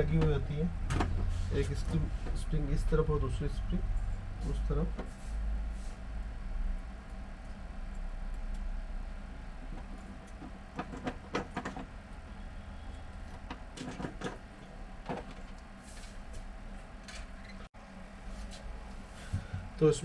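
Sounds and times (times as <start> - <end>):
steady low hum: 0.0 - 20.0
light clicks of small parts: 6.2 - 8.7.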